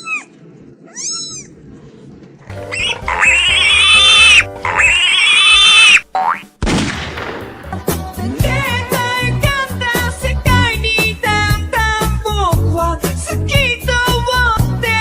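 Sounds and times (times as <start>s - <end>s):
squealing animal cries: 0.0s - 1.6s, 2.5s - 6.1s
background music: 2.5s - 15.0s.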